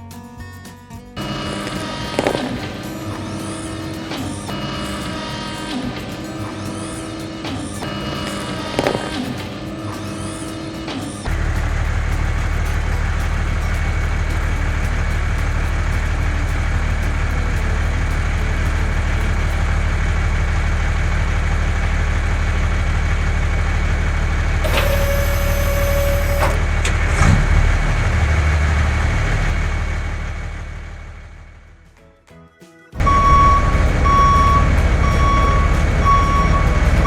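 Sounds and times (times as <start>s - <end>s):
heavy vehicle engine idling: 1.2s - 31.6s, 33.0s - 37.0s
short hissing tone: 24.6s - 26.6s.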